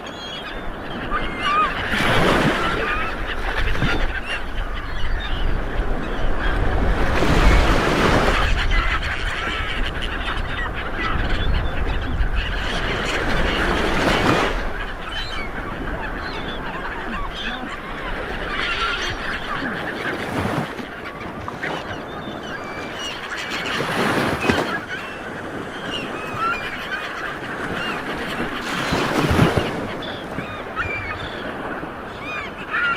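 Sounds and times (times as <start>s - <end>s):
sea water washing: 12.7s - 32.7s.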